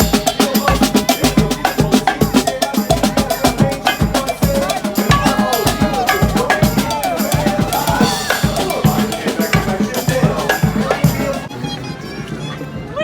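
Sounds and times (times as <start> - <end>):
steady drum beat: 0.0 - 11.5.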